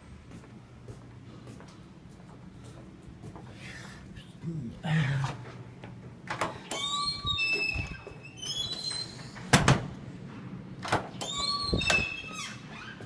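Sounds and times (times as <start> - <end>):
short high squeaks: 6.6 - 9.4, 11.2 - 13.0.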